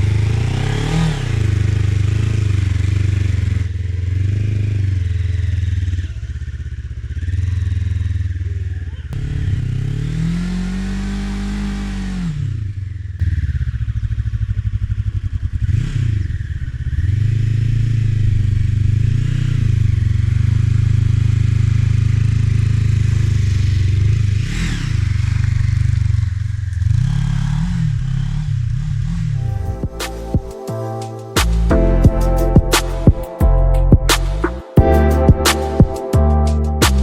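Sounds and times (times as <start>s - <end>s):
motorcycle engine running: 0.0s - 30.5s.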